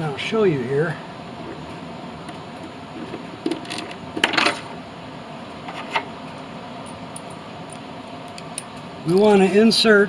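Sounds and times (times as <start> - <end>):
small metal hardware clinking: 6.8 - 9.3.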